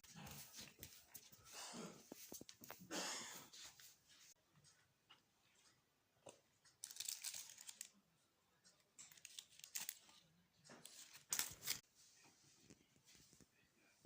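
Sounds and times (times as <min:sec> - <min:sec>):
crinkling rustling handling noise: 0:06.8 - 0:08.0, 0:09.0 - 0:11.8.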